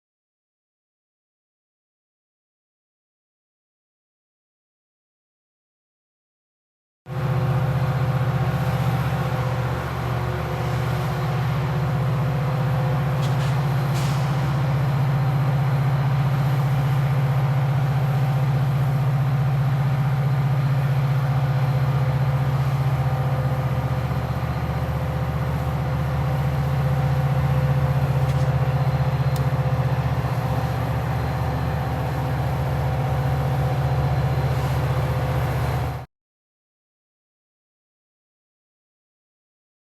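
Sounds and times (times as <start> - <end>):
locomotive diesel engine idling: 7.3 - 36.0.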